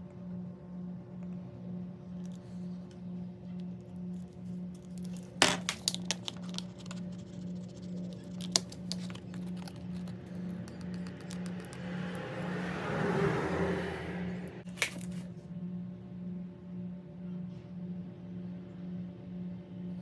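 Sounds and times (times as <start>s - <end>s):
sharp clicks: 8.1s - 12.3s.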